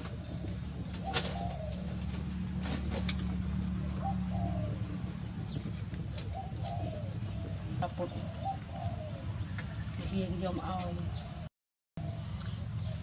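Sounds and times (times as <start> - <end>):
dove cooing: 0.0 - 9.8
steady low hum: 0.0 - 11.4.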